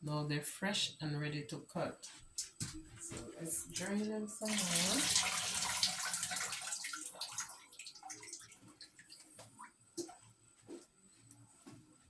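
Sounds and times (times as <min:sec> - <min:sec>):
water pouring and splashing: 0:03.6 - 0:10.2
water dripping: 0:03.6 - 0:10.3.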